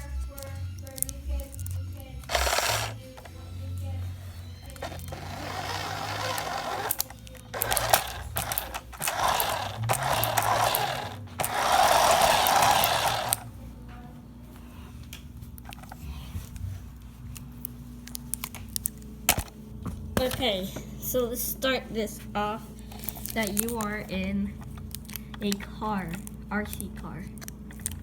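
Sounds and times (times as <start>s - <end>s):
toy car electric motor whirring: 0.0s - 13.5s, 22.9s - 26.8s
clicks and rattles: 4.6s - 13.5s.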